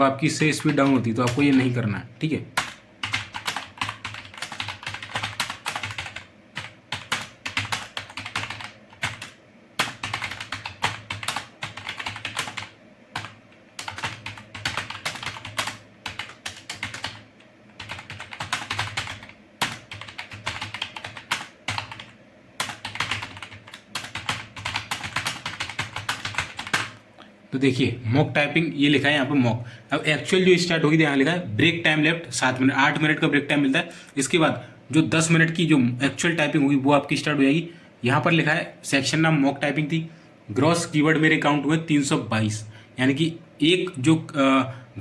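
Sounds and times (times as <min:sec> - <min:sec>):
computer keyboard typing: 0:00.4 - 0:01.8, 0:02.5 - 0:27.0.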